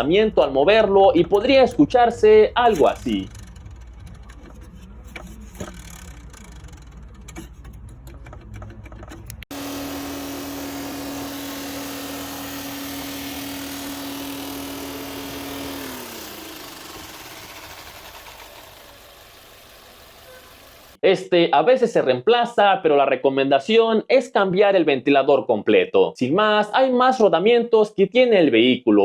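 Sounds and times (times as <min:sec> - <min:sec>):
radiator fan humming: 0:02.5 - 0:21.0
fan whining and hissing: 0:09.4 - 0:21.0.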